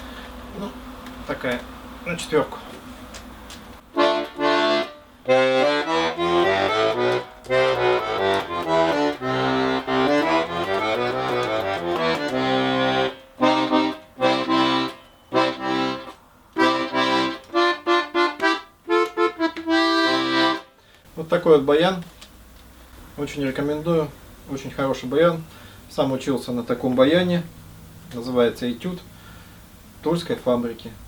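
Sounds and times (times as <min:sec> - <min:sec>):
button accordion playing a tune: 0:03.9 - 0:20.8.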